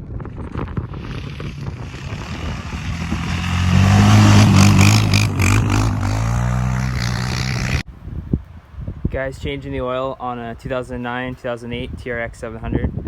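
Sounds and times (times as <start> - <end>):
quad engine running: 0.7 - 7.8.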